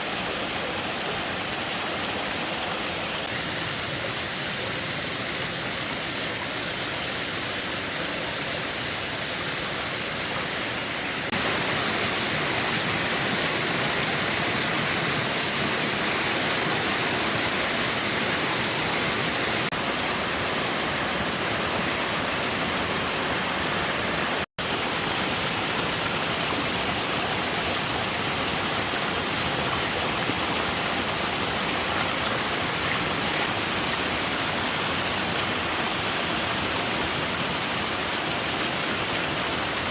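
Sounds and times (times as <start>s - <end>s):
rushing water: 0.0s - 39.9s.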